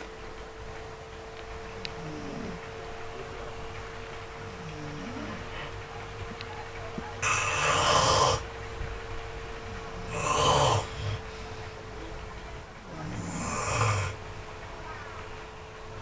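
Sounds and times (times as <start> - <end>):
person snoring: 7.2 - 8.4, 10.1 - 11.4, 13.0 - 14.2.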